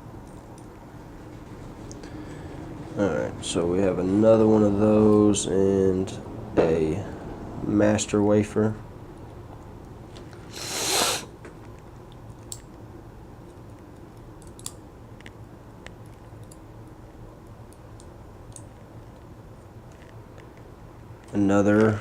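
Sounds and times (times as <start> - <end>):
short rush of noise: 10.5 - 11.3.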